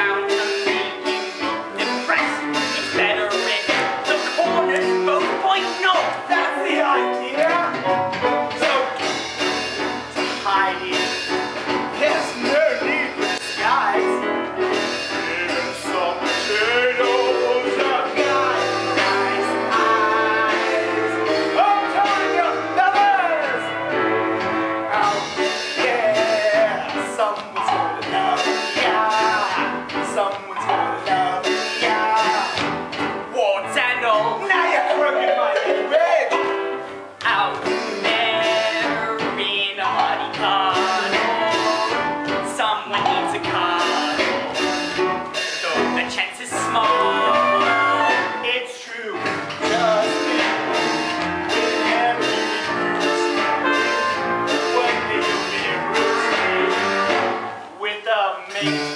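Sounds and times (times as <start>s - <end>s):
person singing: 0.0s - 7.9s, 15.1s - 24.2s, 24.9s - 32.8s, 37.2s - 44.9s, 45.6s - 48.6s, 49.2s - 57.4s, 58.4s - 58.9s
instrumental accompaniment: 0.0s - 57.8s, 58.5s - 58.9s.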